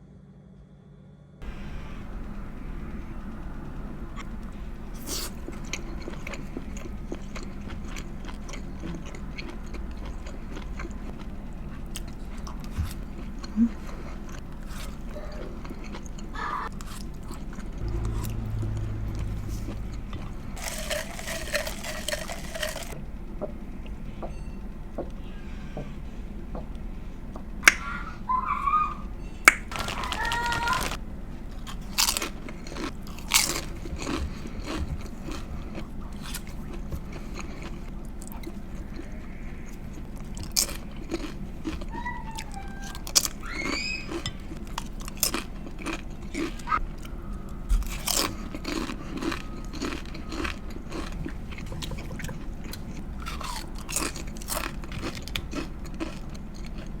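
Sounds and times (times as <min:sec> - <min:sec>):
close-miked chewing and crunching: 0:04.0 - 0:24.0, 0:29.4 - 0:57.0.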